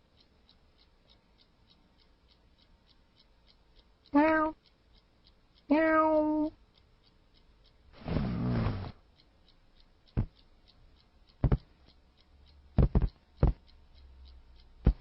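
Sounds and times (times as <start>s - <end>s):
sharp knocks: 12.8s - 13.6s.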